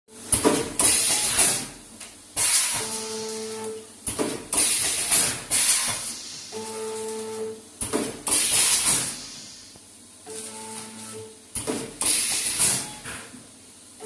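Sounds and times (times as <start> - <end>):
pneumatic air hissing blasts: 4.5 - 6.6, 8.3 - 9.7.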